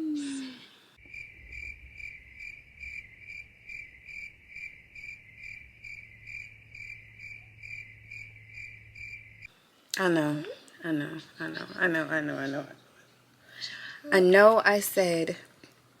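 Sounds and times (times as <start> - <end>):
low hum: 0.0 - 9.5
insect chirping trill: 1.0 - 9.5.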